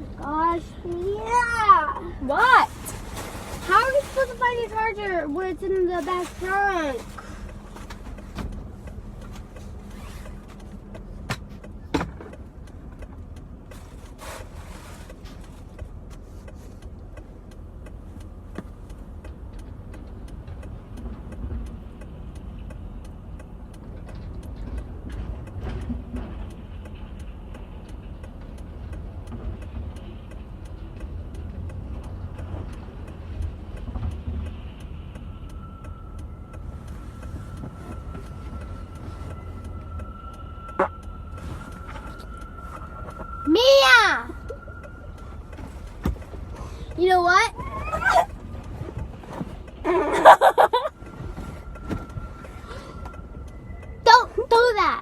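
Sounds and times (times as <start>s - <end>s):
car interior rumble: 0.0s - 55.0s
faint steady tone: 33.1s - 55.0s.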